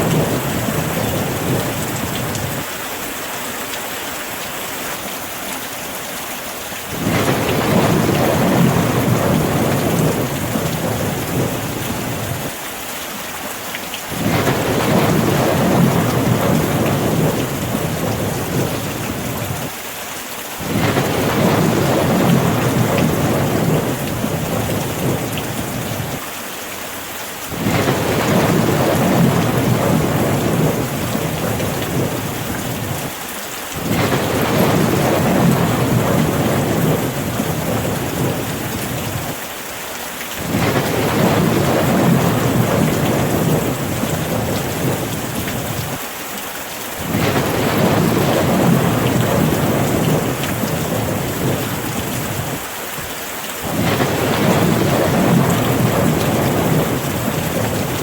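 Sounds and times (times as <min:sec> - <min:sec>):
steady rain falling: 0:00.0 - 0:58.0.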